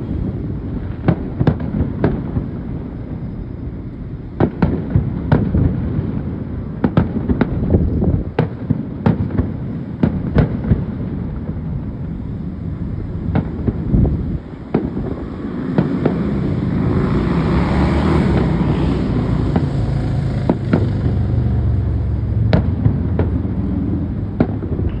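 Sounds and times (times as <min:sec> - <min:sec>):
fireworks bangs: 0:00.0 - 0:25.0.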